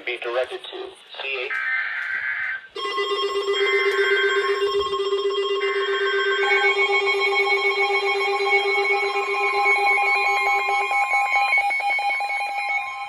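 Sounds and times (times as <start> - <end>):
electronic emergency alert tone: 2.8 - 13.0.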